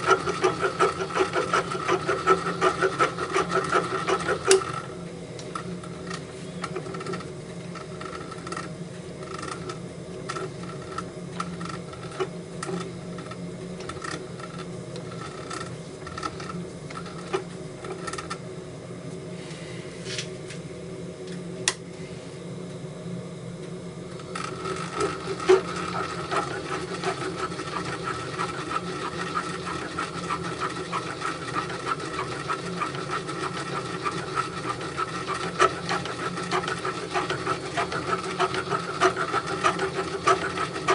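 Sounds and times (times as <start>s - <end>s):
drilling-milling machine running: 0.0s - 18.4s, 24.2s - 40.9s.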